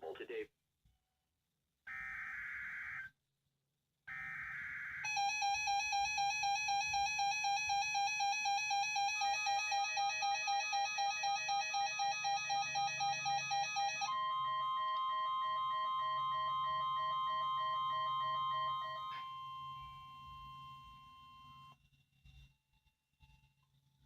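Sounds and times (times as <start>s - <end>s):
steady high alarm tone: 4.1s - 21.8s.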